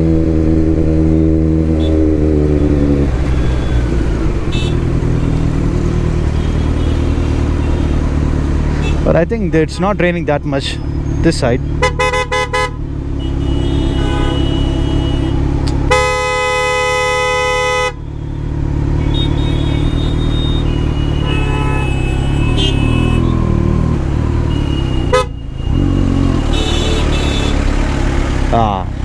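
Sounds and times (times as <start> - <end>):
motorcycle engine and road rumble: 0.0 - 29.0
vehicle horns honking: 1.7 - 8.1, 8.7 - 9.1, 11.8 - 18.1, 18.9 - 27.8.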